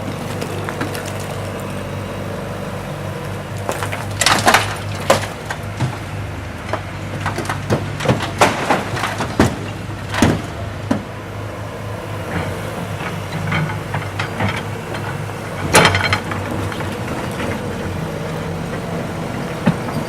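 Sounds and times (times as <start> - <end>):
diesel loader engine running: 0.0 - 20.0
clanks and knocks: 3.6 - 11.1, 12.3 - 17.6.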